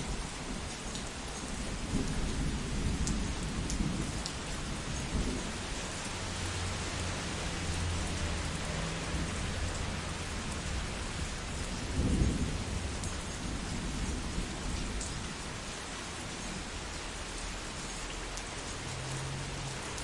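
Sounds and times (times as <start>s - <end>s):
rain falling: 0.0s - 20.0s
low thunder rumbling: 1.6s - 5.6s, 9.1s - 15.7s.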